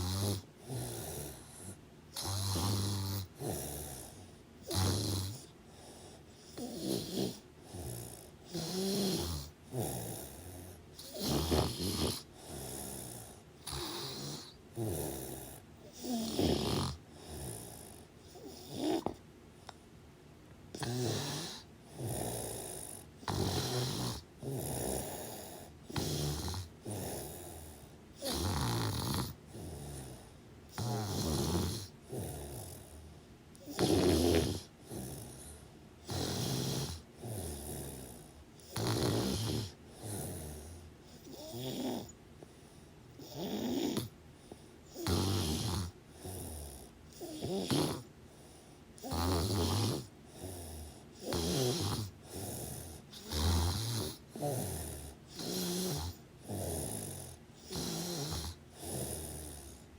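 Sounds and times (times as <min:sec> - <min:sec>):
person snoring: 0:00.0 - 0:19.2, 0:20.8 - 0:42.2, 0:43.2 - 0:44.1, 0:44.9 - 0:59.9
soft breathing: 0:05.4 - 0:06.8, 0:31.9 - 0:36.0, 0:39.7 - 0:43.2, 0:44.0 - 0:44.9, 0:48.2 - 0:49.0.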